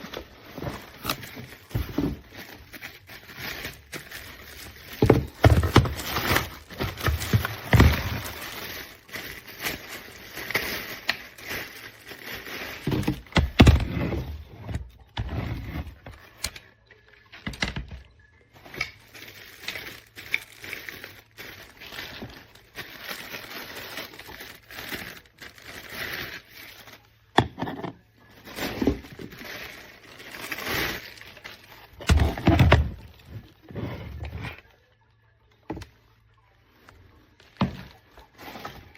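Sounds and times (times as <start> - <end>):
handling knocks and scrapes: 0.0 - 16.6.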